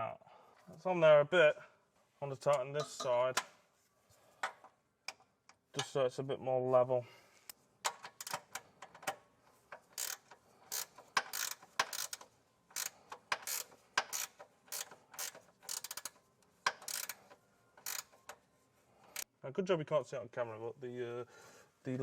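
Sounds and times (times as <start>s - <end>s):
ratcheting spanner clicking: 7.8s - 18.4s.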